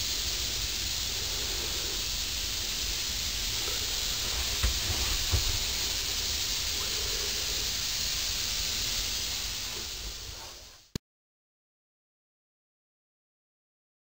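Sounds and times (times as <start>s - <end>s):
steady hiss: 0.0s - 11.0s.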